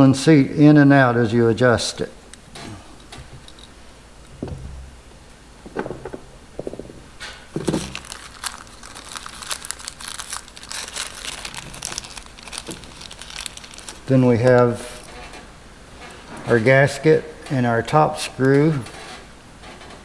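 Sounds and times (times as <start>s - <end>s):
small parts knocking: 5.6s - 9.6s
plastic packaging crinkling: 7.5s - 15.1s.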